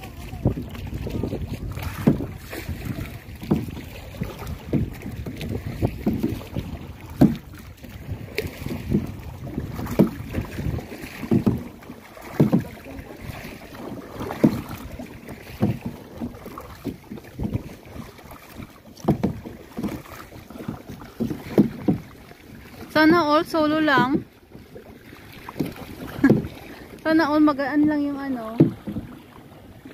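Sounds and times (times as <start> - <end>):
wind rumble on microphone: 0.0 - 11.8
paddles splashing in water: 0.0 - 29.9.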